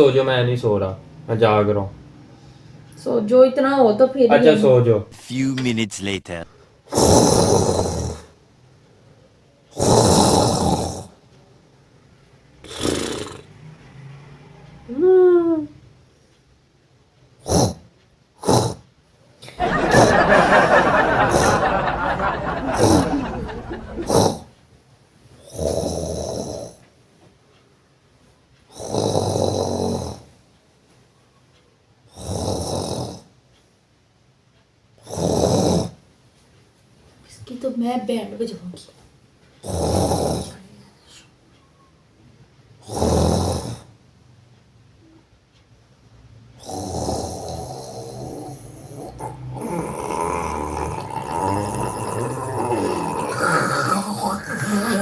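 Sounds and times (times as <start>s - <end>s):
man snoring loudly: 7.0s - 8.3s, 9.8s - 11.1s, 12.7s - 13.5s, 25.5s - 26.8s, 28.8s - 30.2s, 32.1s - 33.3s, 35.0s - 36.0s, 39.6s - 40.6s, 42.8s - 43.9s, 46.6s - 55.0s.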